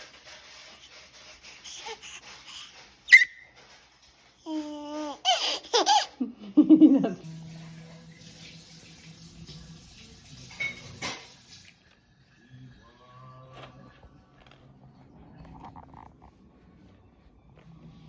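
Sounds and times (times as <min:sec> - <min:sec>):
sharp squeak: 0:03.1 - 0:03.6.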